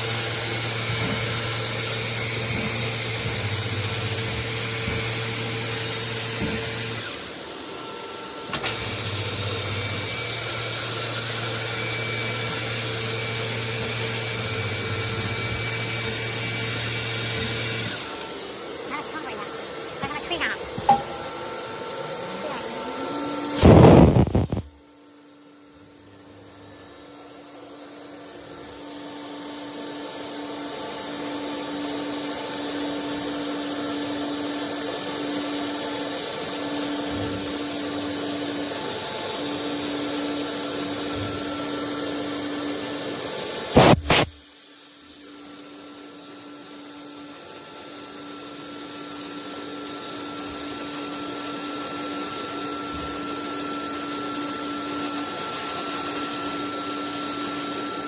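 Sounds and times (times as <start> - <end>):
cnc router whirring: 0.0 - 24.7, 26.2 - 58.0
loud sharp air blasts: 23.6 - 24.7, 43.7 - 44.4.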